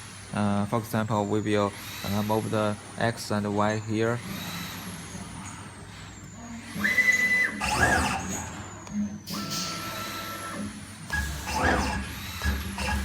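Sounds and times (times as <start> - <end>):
stepper motors whining: 3.8 - 13.0.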